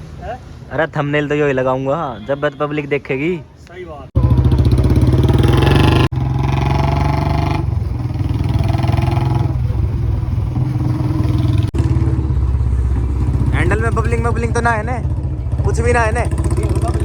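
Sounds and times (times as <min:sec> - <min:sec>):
motorcycle engine running: 0:04.2 - 0:17.0.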